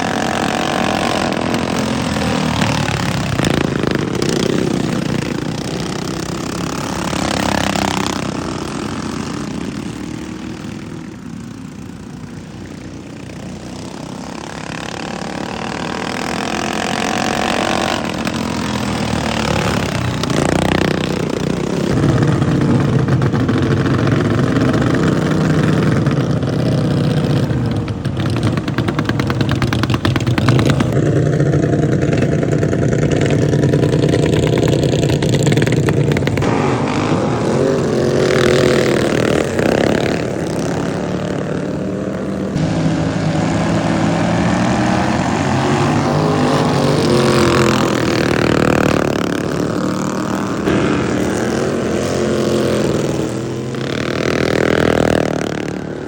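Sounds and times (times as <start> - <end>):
racing lawn mower engines revving: 0.0 - 56.0.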